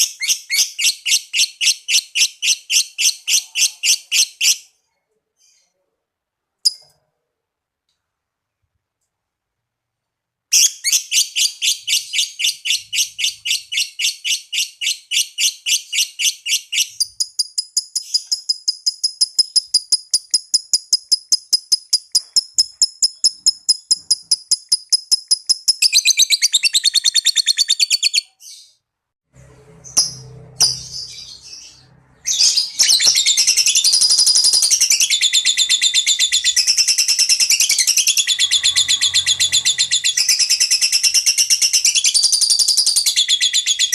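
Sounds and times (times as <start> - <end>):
lovebird trilling: 29.8 - 43.9.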